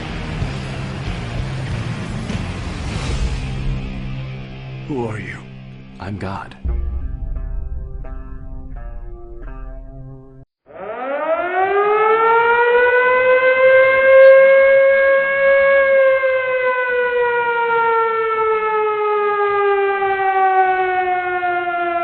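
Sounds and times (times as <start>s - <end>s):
civil defense siren wailing: 10.7s - 22.0s.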